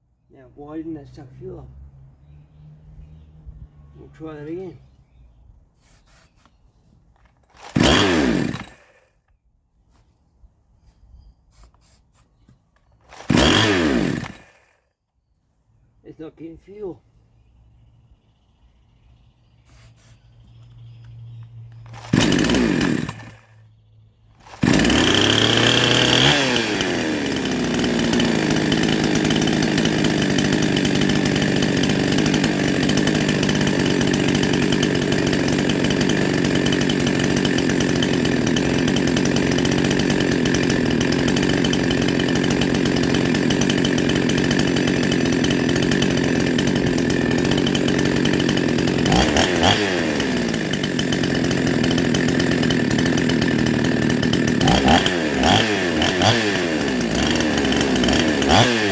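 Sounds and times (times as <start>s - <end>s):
chainsaw engine starting and revving: 0.8s - 4.9s, 7.2s - 9.3s, 12.9s - 14.9s, 20.9s - 23.7s, 24.3s - 58.9s.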